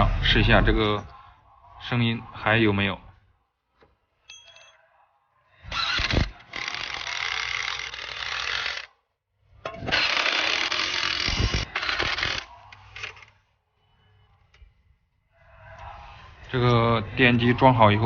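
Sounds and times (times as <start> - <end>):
wrench rapid mechanical clatter: 5.7 - 8.9, 9.7 - 13.3.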